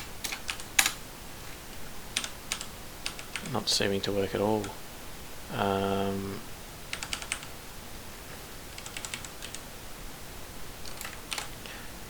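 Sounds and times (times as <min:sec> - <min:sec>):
computer keyboard typing: 0:00.0 - 0:01.0, 0:02.1 - 0:03.6, 0:06.9 - 0:07.5, 0:08.7 - 0:09.6, 0:10.8 - 0:11.6.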